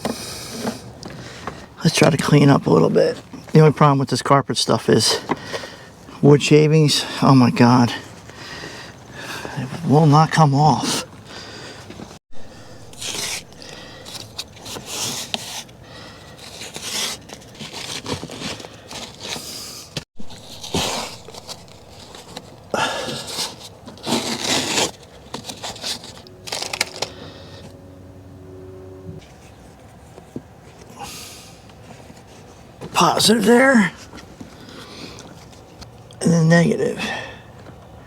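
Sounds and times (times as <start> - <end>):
brushing wood shavings off carpet: 12.5 - 19.5, 20.2 - 26.2.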